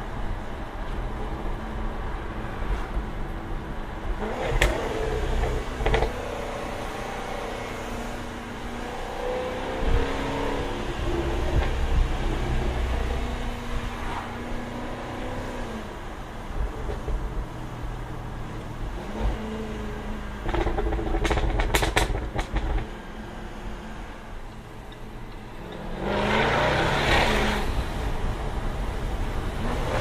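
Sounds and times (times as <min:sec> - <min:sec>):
car engine revving: 0:25.4 - 0:28.4.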